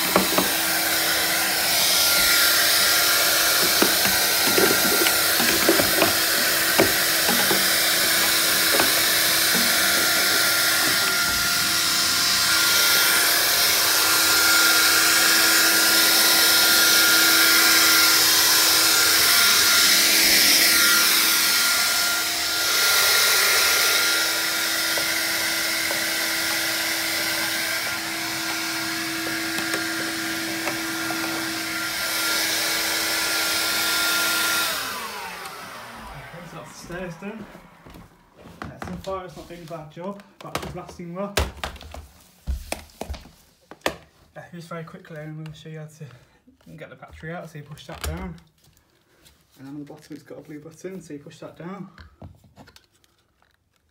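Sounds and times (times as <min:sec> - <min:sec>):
vacuum cleaner running: 0:00.0 - 0:41.0.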